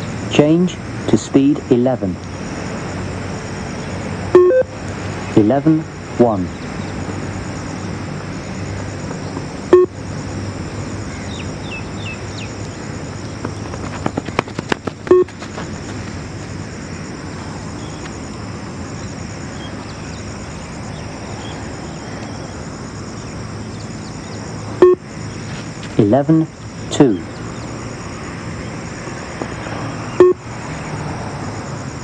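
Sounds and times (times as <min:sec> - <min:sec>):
steady background noise: 0:00.0 - 0:32.0
short loud beeps: 0:04.4 - 0:04.7, 0:09.7 - 0:10.0, 0:24.8 - 0:25.0, 0:30.2 - 0:30.4.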